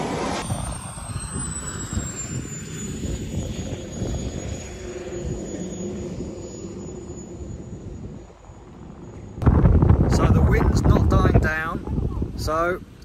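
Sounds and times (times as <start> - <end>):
model aircraft engine whine: 0.0 - 9.4
wind rumble on microphone: 0.0 - 13.0.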